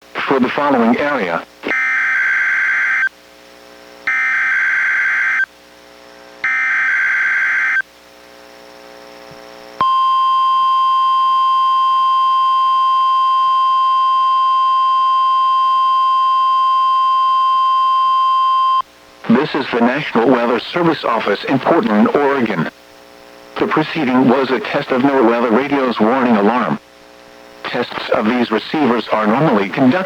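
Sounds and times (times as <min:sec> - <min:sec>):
steady alarm tone: 0:04.0 - 0:05.5, 0:06.4 - 0:07.8, 0:09.8 - 0:18.8.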